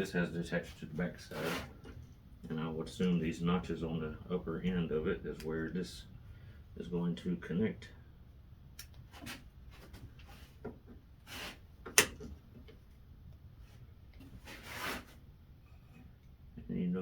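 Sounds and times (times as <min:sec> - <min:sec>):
sharp click: 0:11.9 - 0:12.2.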